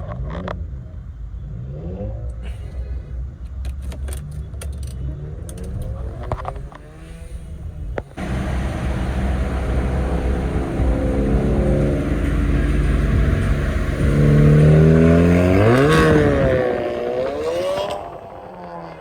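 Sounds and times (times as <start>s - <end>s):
car engine revving: 5.6s - 19.0s
steady low rumble: 5.8s - 16.9s
loud rushing noise: 8.2s - 18.6s.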